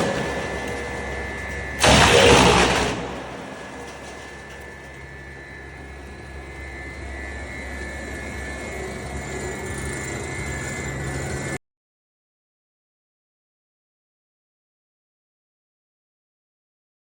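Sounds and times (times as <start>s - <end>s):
wood chipper droning with whine: 0.0s - 11.6s.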